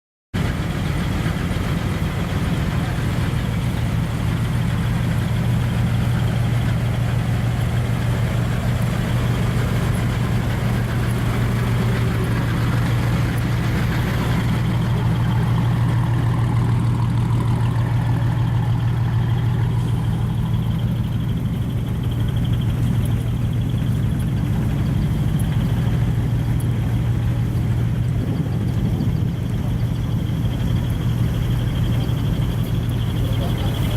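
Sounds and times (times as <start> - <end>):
truck diesel engine idling: 0.4 - 33.9.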